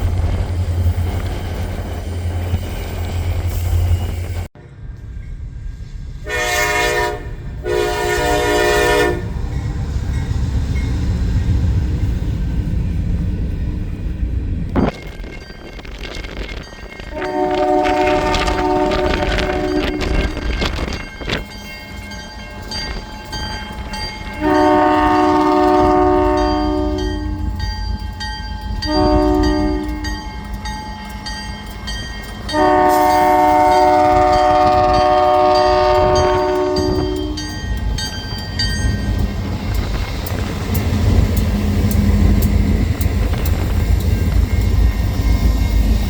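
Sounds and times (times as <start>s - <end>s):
train rumbling past: 0.0s - 46.0s
train horn blasts: 6.2s - 9.4s, 17.1s - 20.9s, 24.3s - 27.5s, 28.8s - 30.2s, 32.5s - 37.6s.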